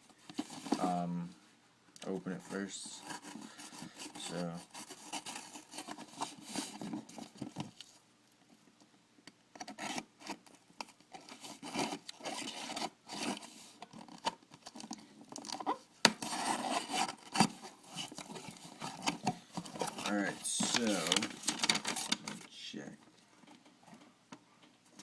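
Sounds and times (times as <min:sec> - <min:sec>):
packaging rustling and tearing: 0:00.2 - 0:01.0, 0:03.0 - 0:07.9, 0:09.6 - 0:22.6.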